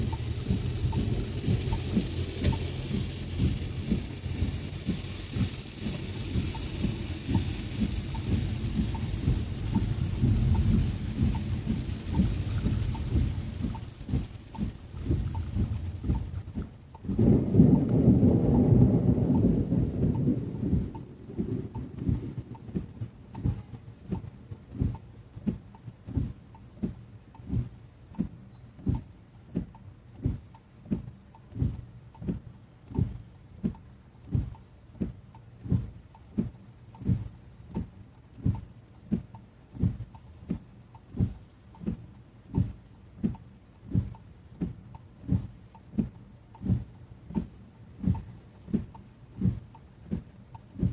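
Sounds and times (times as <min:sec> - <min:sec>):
thunder roll: 0:00.0 - 0:23.6
heavy rain on car: 0:00.0 - 0:50.9
windscreen wipers thumping: 0:00.0 - 0:50.9.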